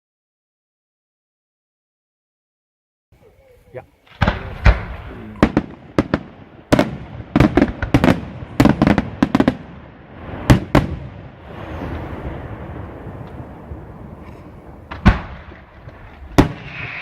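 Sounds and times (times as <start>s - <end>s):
rumbling echo: 4.0s - 16.6s
firework shells bursting: 14.1s - 17.0s.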